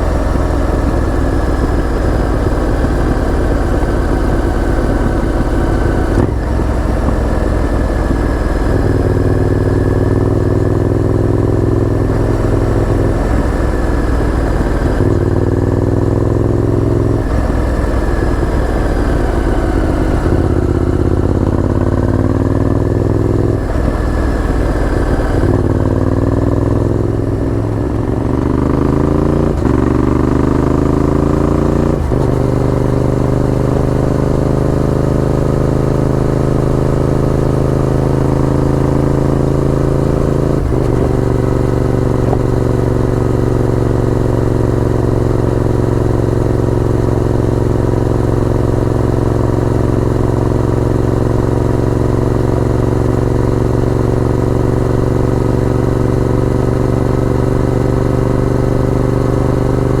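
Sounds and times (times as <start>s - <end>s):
motorcycle engine accelerating: 0.0s - 60.0s.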